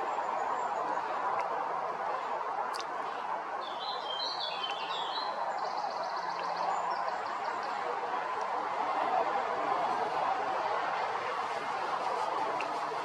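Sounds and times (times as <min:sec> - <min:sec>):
birds chirping: 0:03.6 - 0:07.7.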